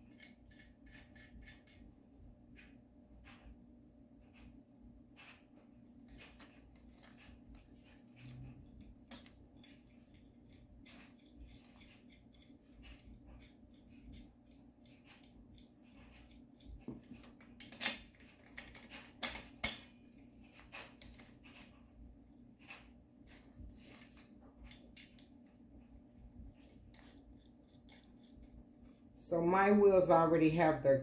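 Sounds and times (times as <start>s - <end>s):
metal parts clicking and clinking: 0.0s - 2.2s, 7.9s - 20.0s, 23.9s - 25.4s, 26.6s - 29.1s.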